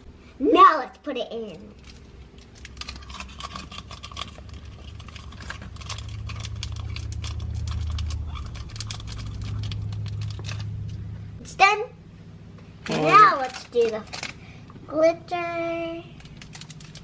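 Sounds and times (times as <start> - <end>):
low handling rumble: 1.4 - 17.0
plastic packet crinkling: 1.8 - 10.8, 12.8 - 14.4, 16.1 - 17.0.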